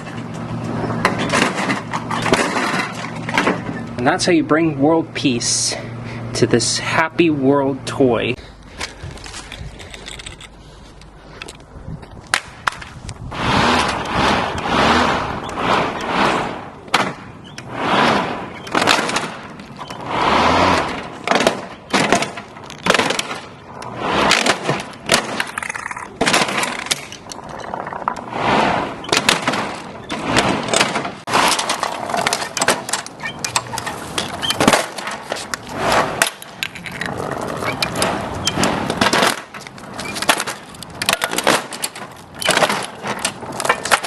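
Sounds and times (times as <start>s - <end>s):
lawn mower surging: 12.6s - 21.9s, 26.8s - 44.0s
plastic cracking and clattering: 29.1s - 44.0s.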